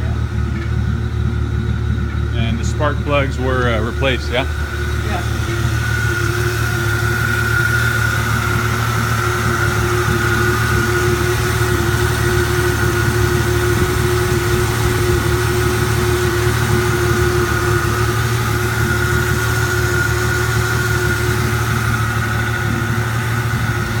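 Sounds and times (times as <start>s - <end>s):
high engine whine: 0.0s - 24.0s
tractor engine idling: 0.0s - 24.0s.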